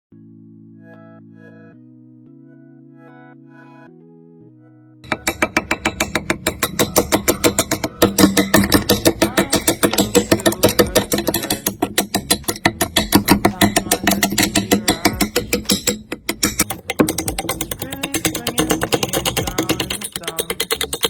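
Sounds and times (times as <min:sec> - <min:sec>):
fast mechanical clicking: 0:05.1 - 0:21.0.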